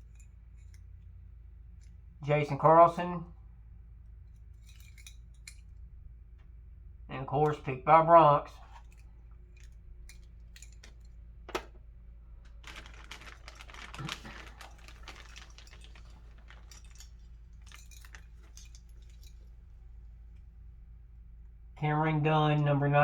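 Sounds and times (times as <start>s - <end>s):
small metal locks clicking: 8.6s - 11.7s
rustling: 12.4s - 20.5s.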